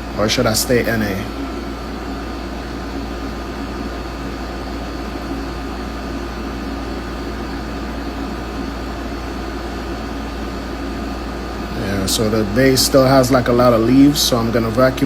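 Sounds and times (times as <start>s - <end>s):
mechanical hum with low drone: 0.0s - 15.0s.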